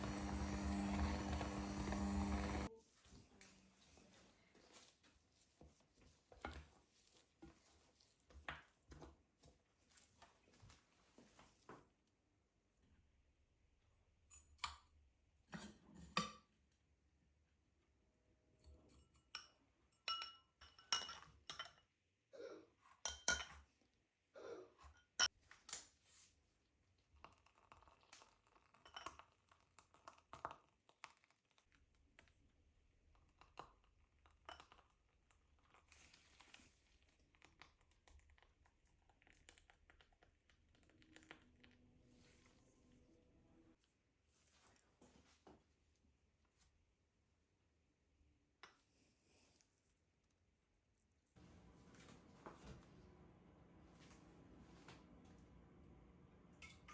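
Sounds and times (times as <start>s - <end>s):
dishes and glassware clinking: 19.0s - 21.9s, 23.0s - 23.7s, 56.6s - 56.9s.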